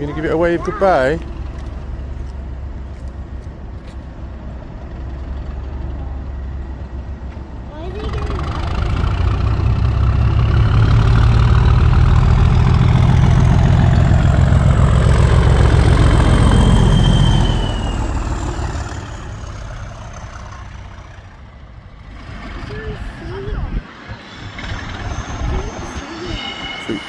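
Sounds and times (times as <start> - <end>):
diesel locomotive engine working: 0.0 - 27.0
thin high whine: 23.8 - 27.0.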